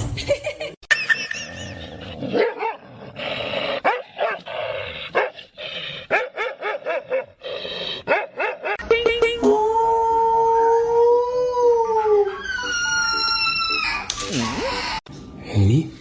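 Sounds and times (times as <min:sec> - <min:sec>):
dog barking: 0:02.3 - 0:02.8, 0:03.8 - 0:04.4, 0:06.1 - 0:07.4, 0:08.1 - 0:08.8.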